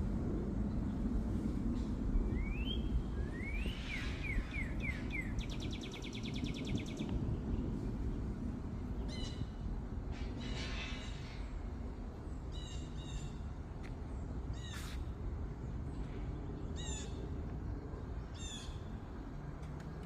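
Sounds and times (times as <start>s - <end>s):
steady low rumble: 0.0s - 20.0s
songbirds calling: 1.8s - 7.7s, 8.8s - 20.0s.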